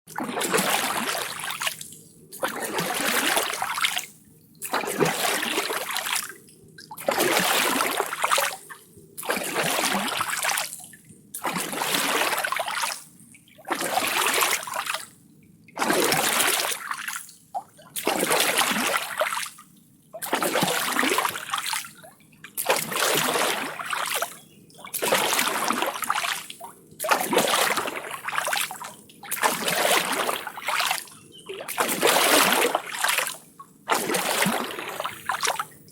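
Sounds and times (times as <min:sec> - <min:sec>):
oars splashing in water: 0:00.2 - 0:04.0, 0:04.6 - 0:06.3, 0:07.0 - 0:08.6, 0:09.2 - 0:10.7, 0:11.4 - 0:12.9, 0:13.6 - 0:15.0, 0:15.8 - 0:17.2, 0:18.0 - 0:19.5, 0:20.2 - 0:21.8, 0:22.6 - 0:35.8.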